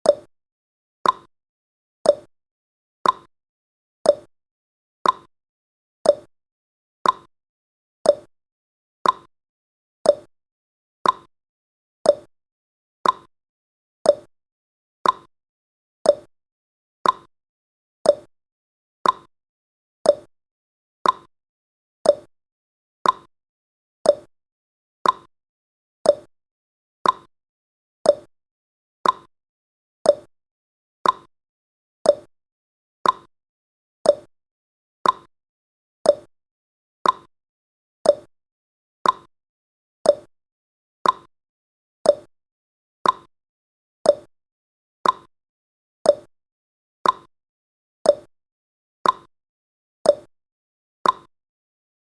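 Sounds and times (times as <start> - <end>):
clock ticking: 9.0 - 9.3, 13.0 - 13.3, 27.0 - 27.3, 29.0 - 29.3, 31.0 - 31.3, 33.0 - 33.3, 35.0 - 35.3, 37.0 - 37.3, 39.0 - 39.3, 41.0 - 41.3, 43.0 - 43.3, 45.0 - 45.3, 47.0 - 47.3, 49.0 - 49.3, 51.0 - 51.3.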